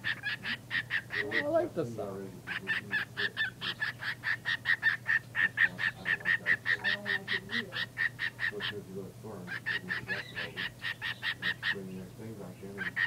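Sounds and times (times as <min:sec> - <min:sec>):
bird honking squawks: 0:00.0 - 0:01.6, 0:02.4 - 0:13.0.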